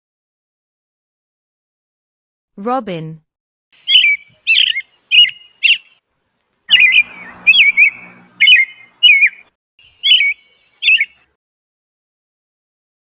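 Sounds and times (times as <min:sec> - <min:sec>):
robin singing: 0:03.8 - 0:06.0, 0:06.7 - 0:11.3.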